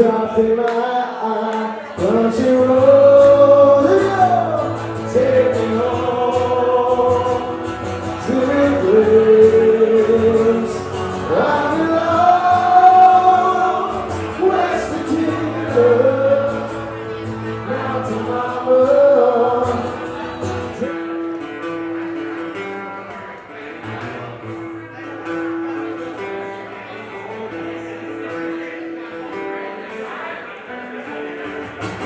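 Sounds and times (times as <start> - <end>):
person singing: 0.0 - 20.9
country music on guitar and bass: 0.0 - 32.0.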